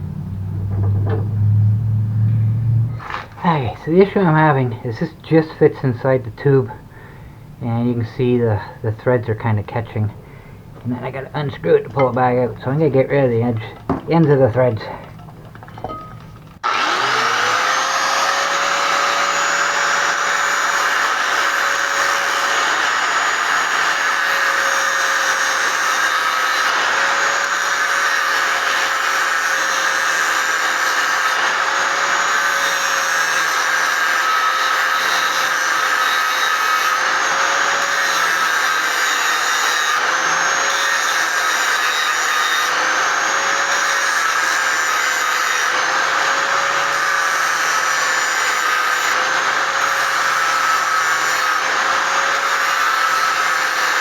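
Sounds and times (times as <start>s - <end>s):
electric grinder whining: 13.5s - 54.0s.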